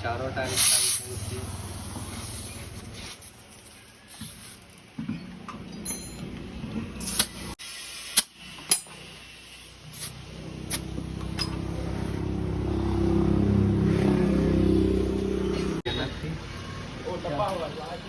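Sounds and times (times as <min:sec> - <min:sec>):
vehicle engine running: 0:10.2 - 0:15.8.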